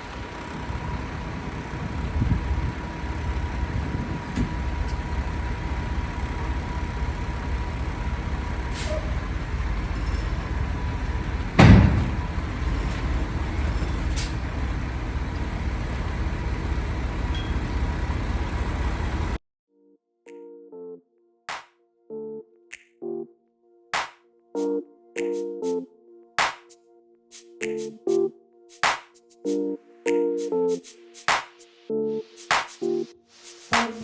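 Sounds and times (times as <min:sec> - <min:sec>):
diesel truck engine idling: 0:00.0 - 0:19.4
loud thump: 0:11.6 - 0:12.4.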